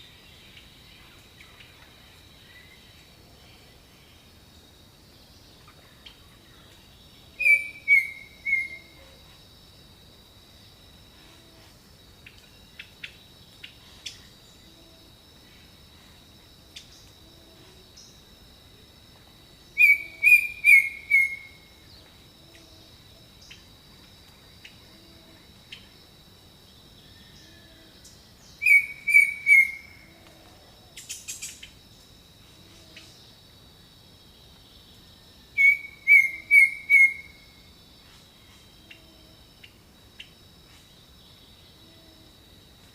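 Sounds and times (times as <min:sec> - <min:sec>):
sharp bird chirps: 0:07.4 - 0:08.9, 0:19.8 - 0:21.6, 0:28.6 - 0:29.9, 0:35.6 - 0:37.3.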